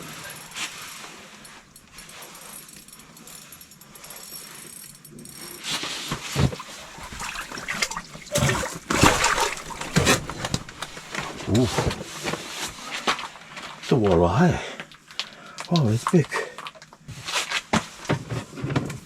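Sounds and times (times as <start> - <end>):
water splashing and sloshing: 6.3 - 13.7.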